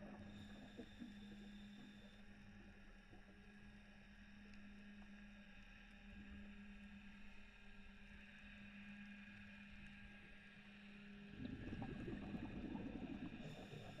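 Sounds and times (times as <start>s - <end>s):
underwater low hum: 0.0s - 14.0s
scuba exhaust bubbles gurgling: 11.2s - 14.0s.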